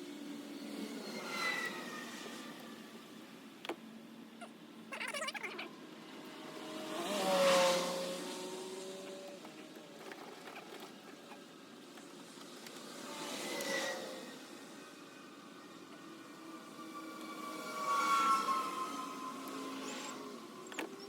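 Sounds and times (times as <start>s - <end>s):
car passing by: 5.8s - 10.9s, 12.1s - 21.0s
another vehicle passing: 6.1s - 9.5s, 16.1s - 20.6s.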